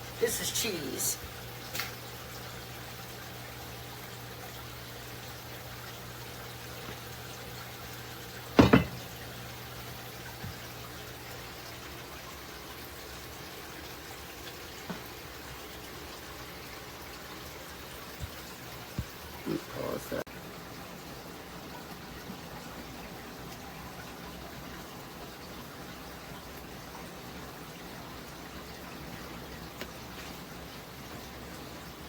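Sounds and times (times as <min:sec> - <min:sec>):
refrigerator hum and hiss: 0:00.0 - 0:32.0
containers set down on shelves: 0:08.6 - 0:09.1.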